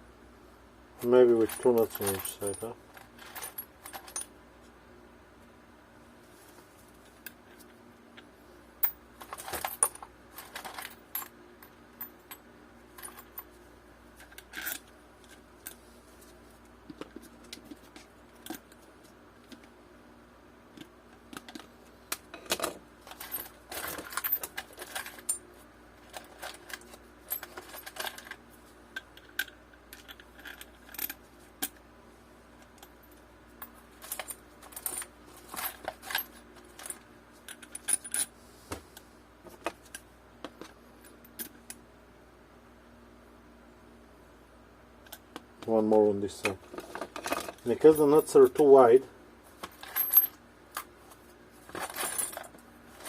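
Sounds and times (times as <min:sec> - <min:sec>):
metal nuts and washers clinking: 0:01.0 - 0:04.3, 0:08.8 - 0:13.5, 0:14.2 - 0:15.8, 0:21.3 - 0:28.4, 0:32.6 - 0:38.3, 0:46.3 - 0:48.8, 0:49.6 - 0:50.9, 0:51.7 - 0:53.0.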